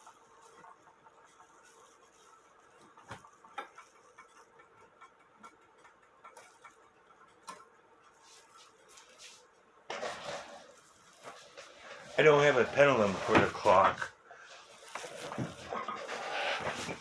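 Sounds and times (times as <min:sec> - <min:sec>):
rustling: 0:08.1 - 0:17.0.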